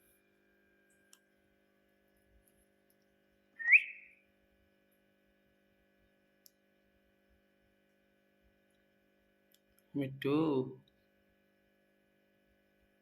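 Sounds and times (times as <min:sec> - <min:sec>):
parrot rising whistle: 0:03.6 - 0:04.2.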